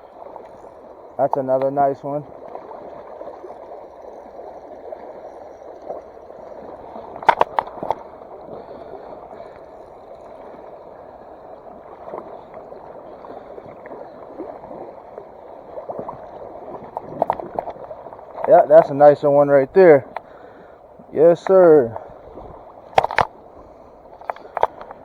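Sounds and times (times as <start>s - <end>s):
stream water gurgling: 0.0s - 25.0s
sharp splashes or knocks: 7.2s - 8.0s, 22.9s - 23.4s.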